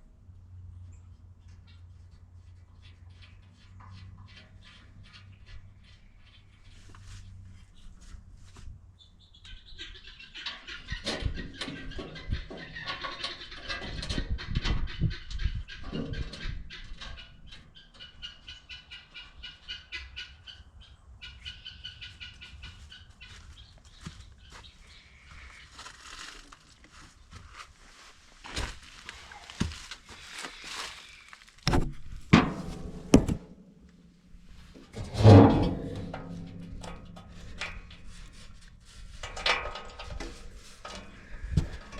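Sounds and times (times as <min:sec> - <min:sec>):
sharp knocks: 0:31.7 - 0:33.8.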